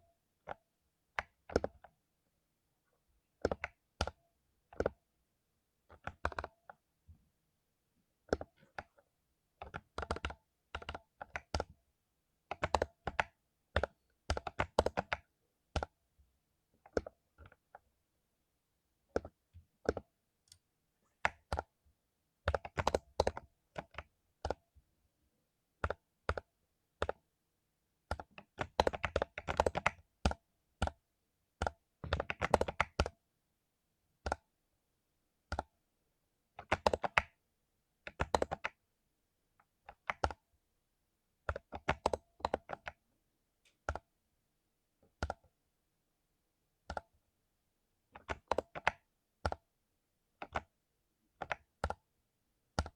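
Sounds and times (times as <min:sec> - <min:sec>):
mechanical keyboard typing: 0:01.2 - 0:01.9, 0:03.4 - 0:05.0, 0:05.9 - 0:06.8, 0:08.2 - 0:09.0, 0:09.6 - 0:11.8, 0:12.5 - 0:16.0, 0:16.9 - 0:17.8, 0:19.1 - 0:20.6, 0:21.2 - 0:21.8, 0:22.4 - 0:24.6, 0:25.8 - 0:27.3, 0:28.0 - 0:31.0, 0:31.6 - 0:33.2, 0:34.2 - 0:34.5, 0:35.5 - 0:35.7, 0:36.6 - 0:37.4, 0:38.0 - 0:38.8, 0:39.8 - 0:40.5, 0:41.4 - 0:43.0, 0:43.7 - 0:44.1, 0:45.0 - 0:45.6, 0:46.8 - 0:47.2, 0:48.1 - 0:49.7, 0:50.4 - 0:52.1, 0:52.7 - 0:52.9.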